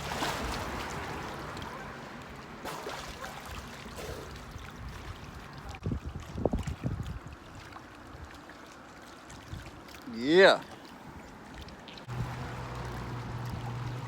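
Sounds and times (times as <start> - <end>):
water splashing and trickling: 0.0 - 14.0.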